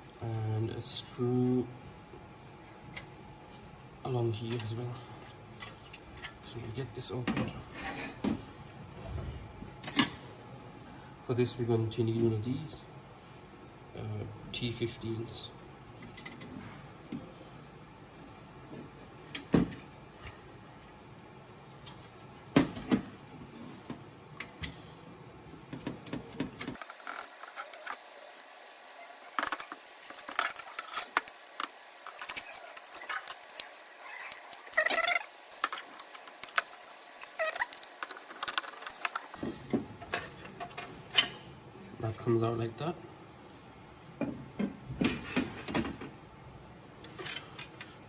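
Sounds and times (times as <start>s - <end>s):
short squeaks: 34.0s - 35.4s, 37.3s - 37.8s.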